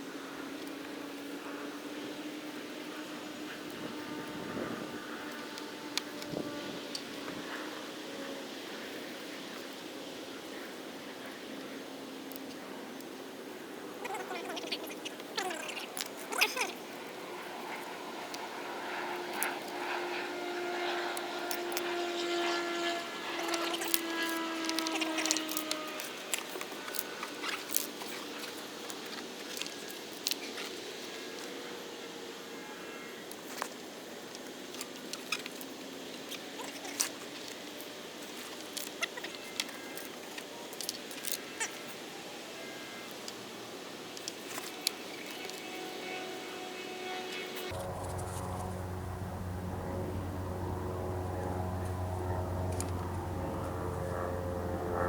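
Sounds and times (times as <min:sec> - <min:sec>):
engine running with low hum: 0:46.4 - 0:55.0.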